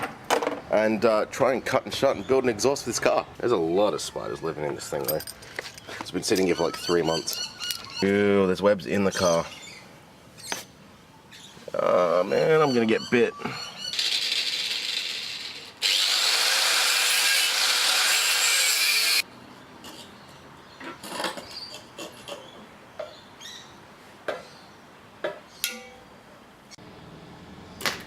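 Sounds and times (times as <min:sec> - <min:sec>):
power tool cutting steel pipe: 0:14.0 - 0:19.2.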